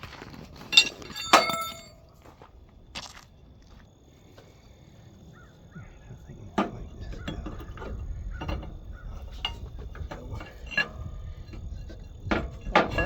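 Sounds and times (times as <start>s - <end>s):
metal parts knocking and clinking: 0.5s - 2.2s, 6.5s - 13.0s.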